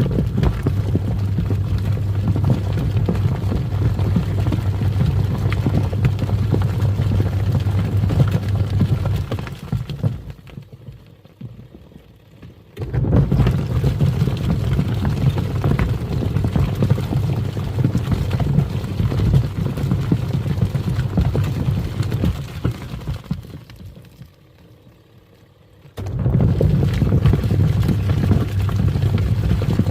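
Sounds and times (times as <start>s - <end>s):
washing machine motor humming: 0.0s - 10.4s, 12.8s - 23.4s, 25.9s - 29.9s
water churning: 26.0s - 29.9s.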